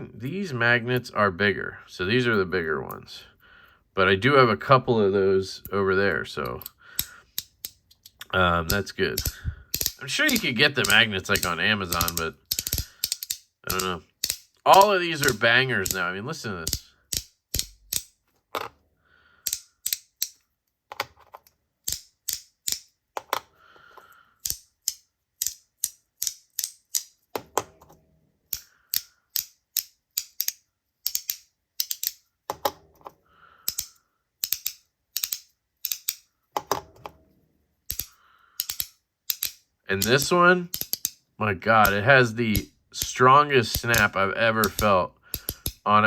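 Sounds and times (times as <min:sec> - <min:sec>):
magnetic fidget coins clicking: 0:06.4 - 0:18.1, 0:33.6 - 0:36.3, 0:37.9 - 0:41.2.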